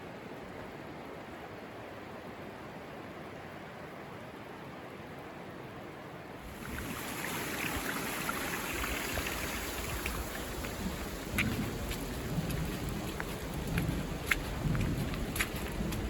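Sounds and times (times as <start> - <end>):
river water rushing: 0.7 - 16.0
rain falling: 6.4 - 16.0
raindrop ticks: 9.9 - 16.0.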